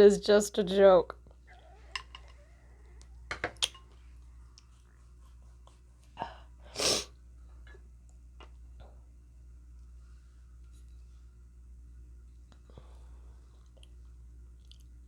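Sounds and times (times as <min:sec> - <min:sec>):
person sneezing: 0:06.7 - 0:07.1.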